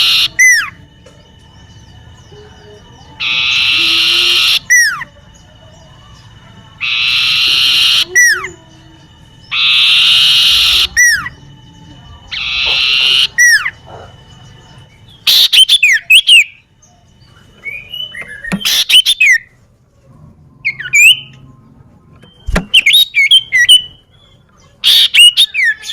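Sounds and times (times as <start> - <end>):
bird chattering: 0.0 - 0.8, 1.9 - 11.5, 12.1 - 14.4, 15.2 - 16.7, 18.0 - 19.4, 22.4 - 25.9
bird whistled notes: 0.0 - 0.8, 3.1 - 5.2, 6.8 - 8.6, 9.4 - 11.5, 12.2 - 13.8, 15.1 - 16.7, 17.6 - 19.6, 22.2 - 24.2, 24.8 - 25.9.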